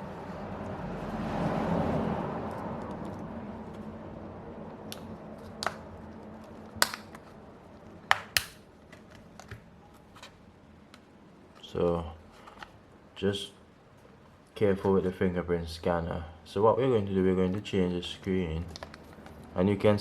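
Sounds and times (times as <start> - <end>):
phone cover clicks: 6.8 - 7.2, 8.1 - 8.6.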